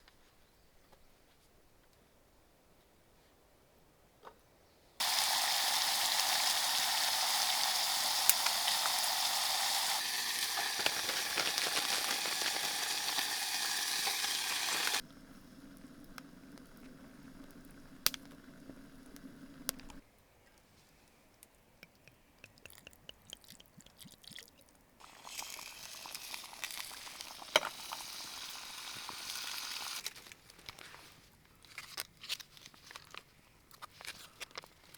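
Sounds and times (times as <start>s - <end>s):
food sizzling in a pan: 5.0s - 15.1s, 25.0s - 30.1s.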